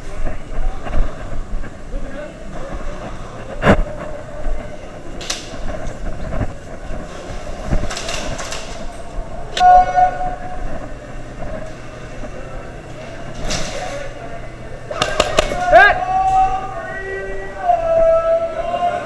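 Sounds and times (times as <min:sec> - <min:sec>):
steady hum: 0:00.0 - 0:19.0
loud horn-like tone: 0:09.6 - 0:10.8
sharp clicks and knocks: 0:14.9 - 0:15.7.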